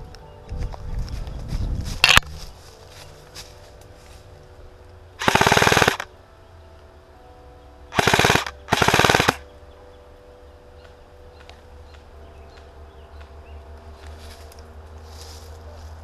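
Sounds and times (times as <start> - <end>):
airsoft gun bursts: 5.2 - 6.1, 8.0 - 9.4.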